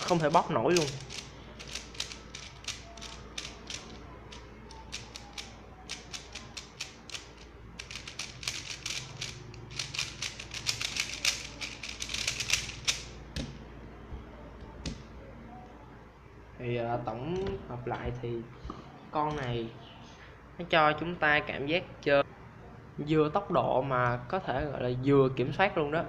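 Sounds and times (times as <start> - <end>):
plastic puzzle cube clicking: 0.0 - 13.2.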